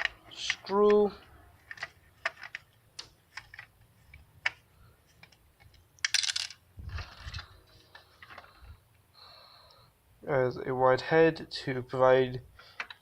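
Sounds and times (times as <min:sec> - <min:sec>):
plastic parts clicking and tapping: 0:00.0 - 0:08.8, 0:12.7 - 0:13.0.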